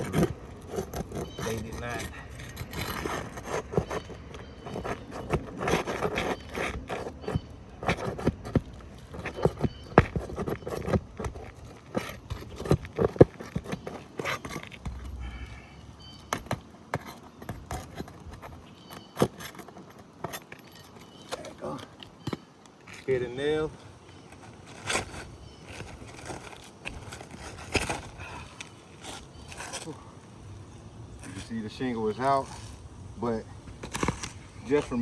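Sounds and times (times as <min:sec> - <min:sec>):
tool prying roof shingle: 0:00.0 - 0:23.0.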